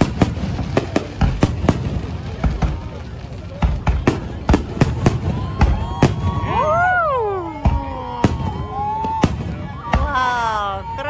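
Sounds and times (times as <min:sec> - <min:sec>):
fireworks bangs: 0:00.0 - 0:11.0.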